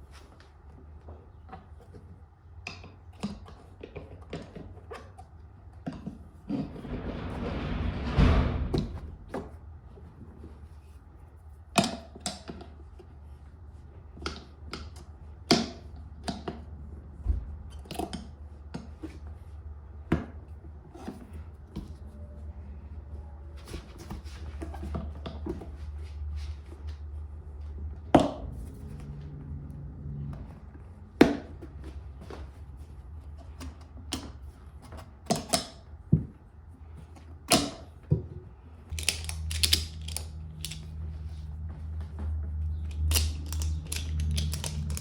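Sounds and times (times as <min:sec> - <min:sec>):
low hum: 0:25.9 - 0:33.0
hand tools clicking and knocking: 0:38.9 - 0:41.0, 0:42.7 - 0:45.0.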